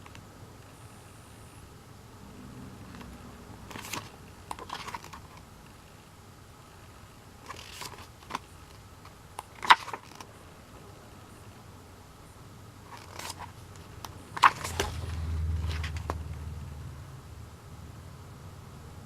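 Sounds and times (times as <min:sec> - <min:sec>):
paper and plastic rustling: 0:03.7 - 0:05.4, 0:07.4 - 0:08.4, 0:09.5 - 0:10.3, 0:12.9 - 0:13.6, 0:14.3 - 0:16.2
packaging clicks: 0:12.9 - 0:16.2.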